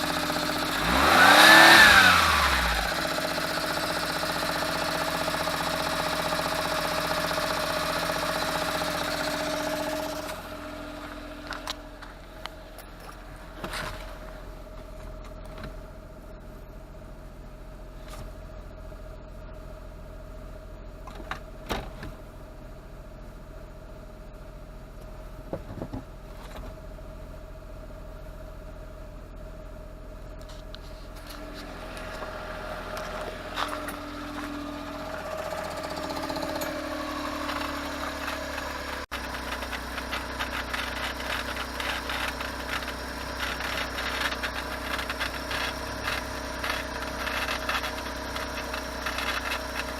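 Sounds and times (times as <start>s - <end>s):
car engine idling: 0.0s - 49.9s
gearbox rattle: 37.4s - 49.9s.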